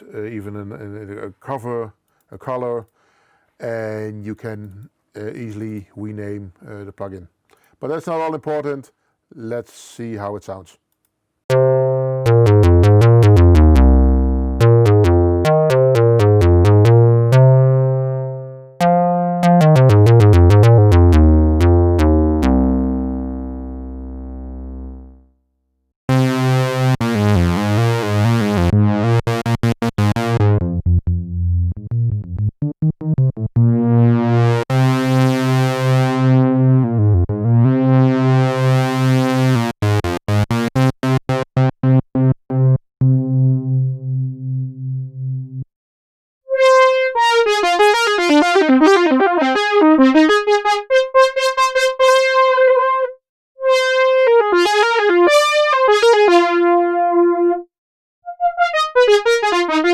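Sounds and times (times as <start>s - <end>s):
monophonic synth phrase: 11.5s - 25.2s, 26.1s - 45.6s
synth bass line: 11.5s - 25.2s, 26.1s - 45.7s.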